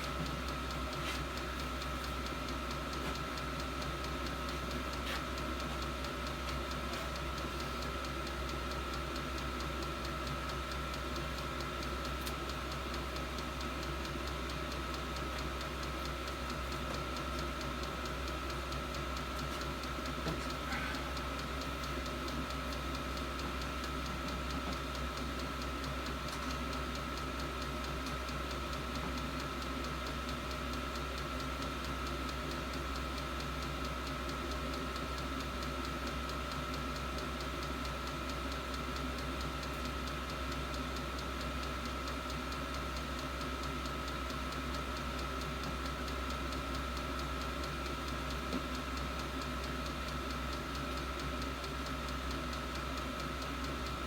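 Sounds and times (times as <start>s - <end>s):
light ticking: 0.0s - 54.0s
diesel heater humming: 12.4s - 25.4s.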